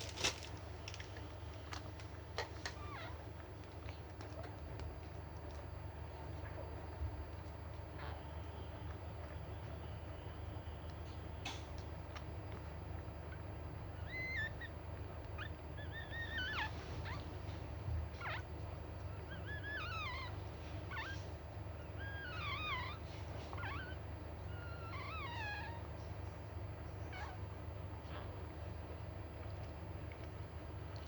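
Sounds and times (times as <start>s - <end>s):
puppy squealing: 13.9s - 17.3s, 18.2s - 18.5s, 19.1s - 25.9s, 27.0s - 27.4s.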